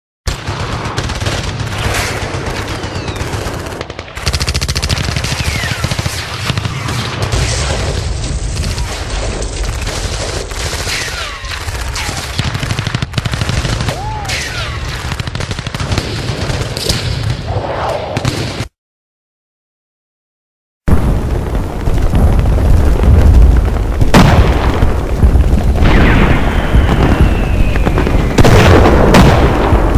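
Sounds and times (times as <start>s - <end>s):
machine-gun fire: 0.3s - 17.3s, 22.1s - 29.9s
falling whistling tones: 26.4s - 28.4s.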